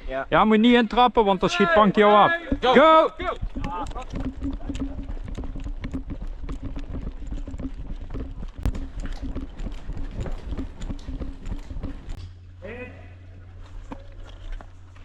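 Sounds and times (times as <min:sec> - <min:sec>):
quick footsteps: 0:02.2 - 0:12.3.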